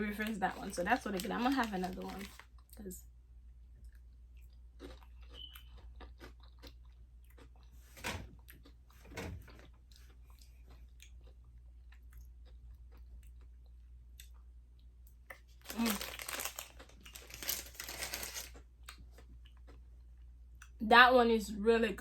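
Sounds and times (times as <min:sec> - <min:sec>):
chewing crunchy cookie: 0:03.7 - 0:20.8.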